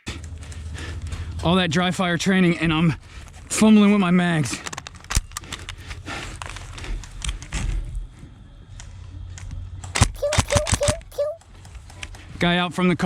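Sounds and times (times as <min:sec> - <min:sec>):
sharp snaps: 0:10.2 - 0:11.4.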